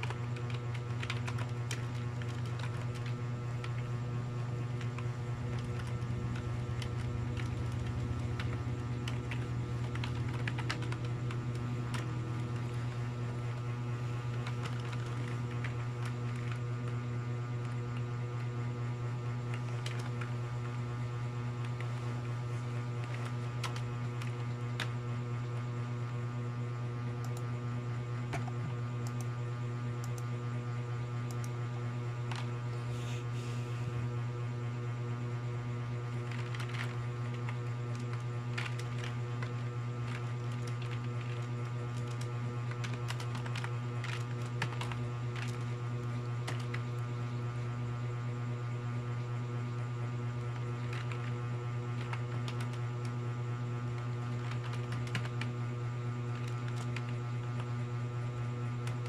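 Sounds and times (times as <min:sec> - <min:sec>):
keyboard keys typing: 0:00.0 - 0:03.9, 0:04.7 - 0:16.6, 0:19.5 - 0:20.3, 0:22.9 - 0:24.9, 0:36.2 - 0:45.7, 0:54.2 - 0:55.5
electrical mains hum: 0:00.0 - 0:59.0.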